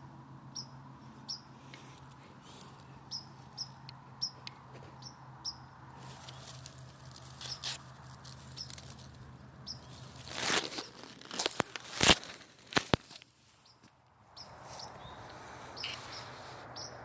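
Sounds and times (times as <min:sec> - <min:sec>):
small bird chirping: 0:00.5 - 0:11.2, 0:13.5 - 0:17.0
crackling rustles: 0:01.6 - 0:03.6, 0:05.9 - 0:16.7.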